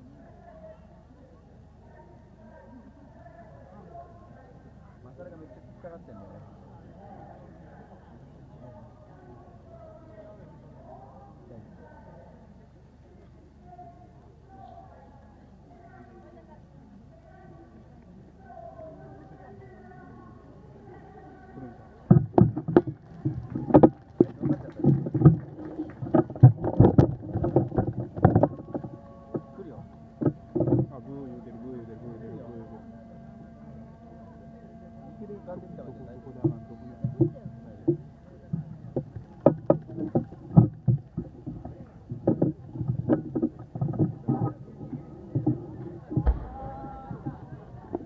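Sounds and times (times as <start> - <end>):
fireworks booming and cracking: 46.2 - 47.6.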